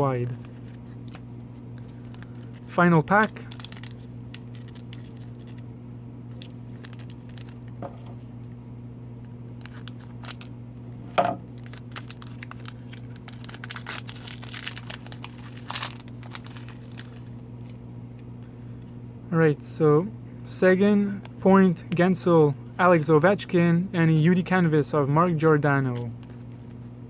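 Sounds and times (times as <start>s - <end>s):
steady low hum: 0.0s - 27.0s
wrapper tearing and crinkling: 1.9s - 5.7s, 6.3s - 7.6s, 9.6s - 17.8s.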